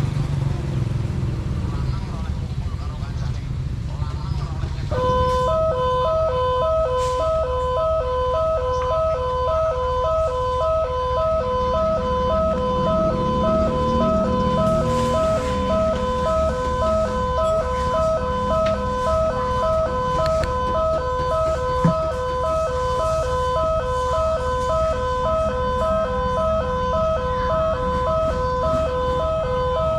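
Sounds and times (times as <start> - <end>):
two-tone level crossing siren: 4.9 - 29.9.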